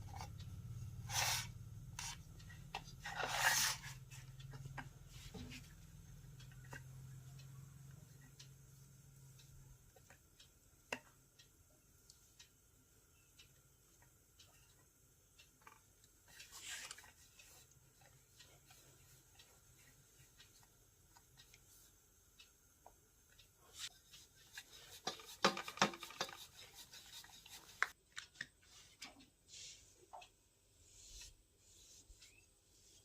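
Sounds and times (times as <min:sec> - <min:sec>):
quiet rubbing and handling: 0:01.0 - 0:06.0, 0:23.6 - 0:33.0
small clicks and taps: 0:09.4 - 0:12.6, 0:22.4 - 0:29.4.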